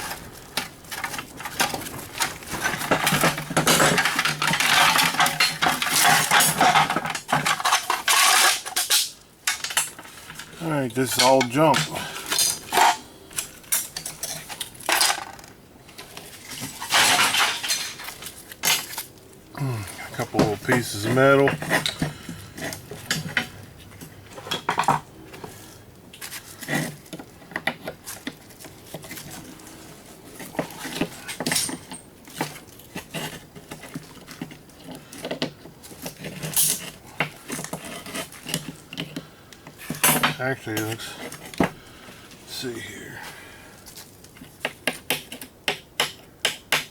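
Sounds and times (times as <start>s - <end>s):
small metal parts clinking and rattling: 0.9s - 19.1s, 30.5s - 33.3s
small metal parts clinking: 11.1s - 15.5s, 31.2s - 32.1s.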